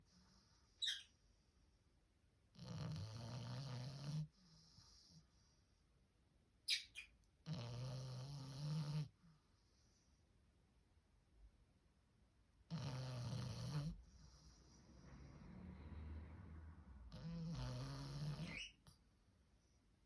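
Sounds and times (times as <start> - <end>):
puppy snoring: 2.5 - 5.2, 7.4 - 9.2, 12.7 - 15.8, 17.0 - 19.0.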